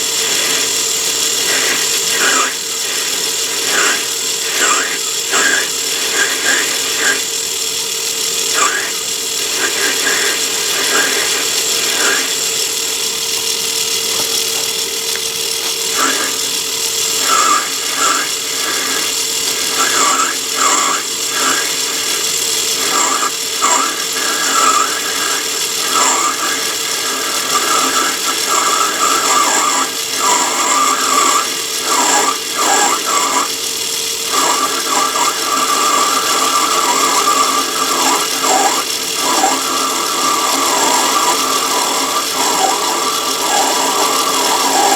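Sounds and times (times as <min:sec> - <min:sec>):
lathe running: 0:00.0 - 0:44.9
metal cutting squeal: 0:00.0 - 0:44.9.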